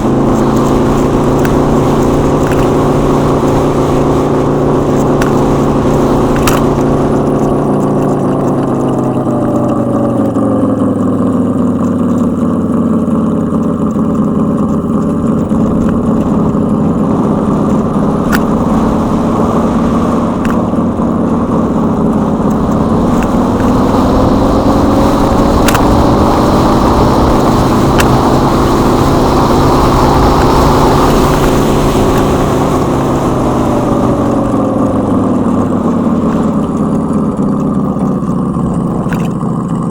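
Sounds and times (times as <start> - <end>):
sharp clicks: 0.0 - 10.4, 21.5 - 28.3, 34.0 - 39.9
synthetic engine hum: 0.0 - 39.9.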